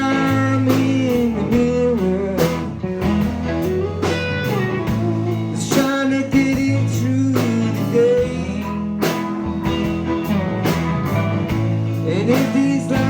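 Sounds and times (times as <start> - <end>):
person singing: 0.0 - 4.0, 5.0 - 9.2, 11.9 - 13.0
country blues band: 0.0 - 13.0
guitar: 0.0 - 13.0.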